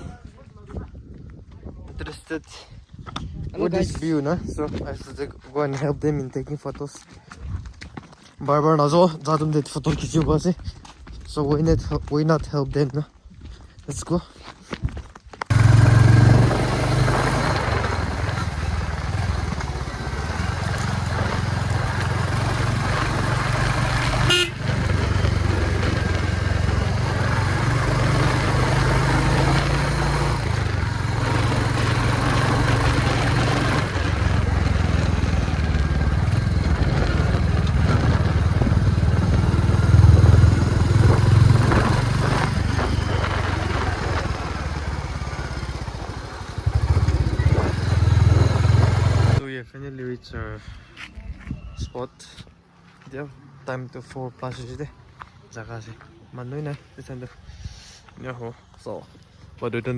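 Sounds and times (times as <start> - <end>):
road and wind noise: 0.0 - 59.9
motorcycle engine drone: 15.5 - 49.4.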